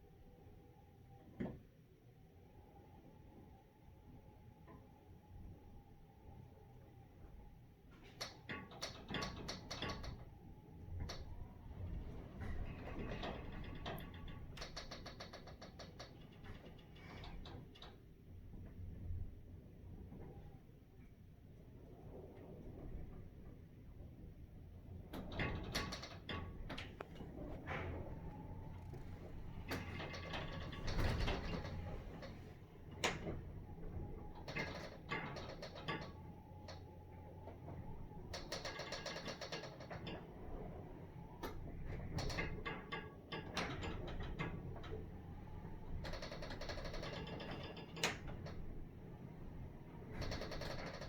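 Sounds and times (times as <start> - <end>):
building structure creaking: 25.2 - 36.7, 50.0 - 51.0
low steady hum: 26.5 - 34.2.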